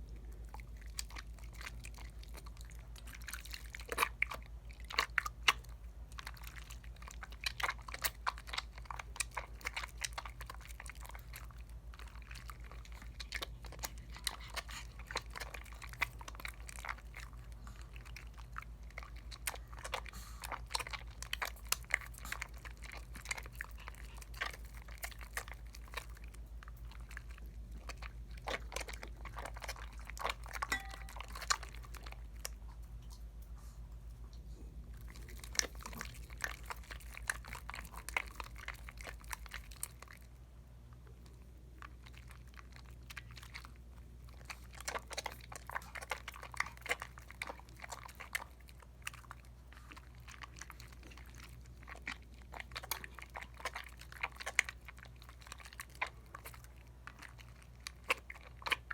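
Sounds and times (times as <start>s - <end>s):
soap lather squishing between hands: 0.0s - 58.9s
low hum: 30.6s - 32.0s.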